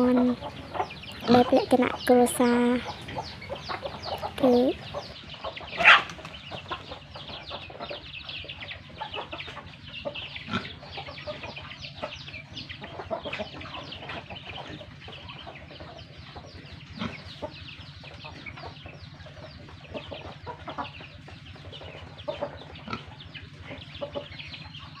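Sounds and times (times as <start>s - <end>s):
chickens clucking and chirping: 0.0s - 5.2s.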